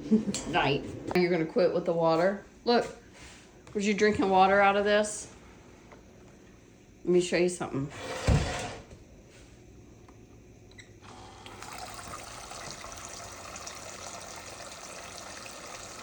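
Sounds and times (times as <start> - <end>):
toy faucet running water: 11.3 - 16.0.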